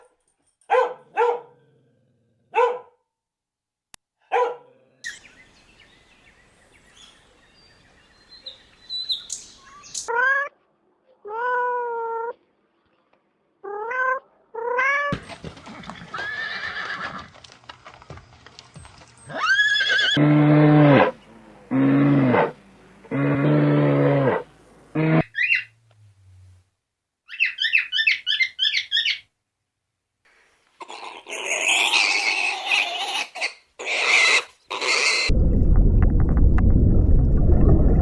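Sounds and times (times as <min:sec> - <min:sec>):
short barks: 0:02.5 - 0:03.0, 0:04.3 - 0:04.7
horse neighing and whinnying: 0:16.0 - 0:17.3, 0:19.3 - 0:21.1.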